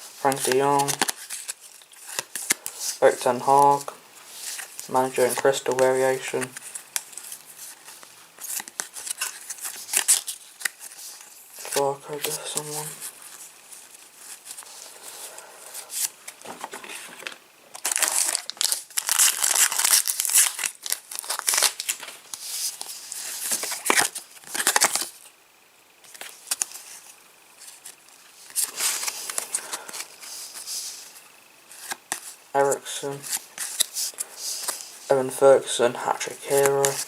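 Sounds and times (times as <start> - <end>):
wrappers torn and crinkled: 17.2 - 25.2.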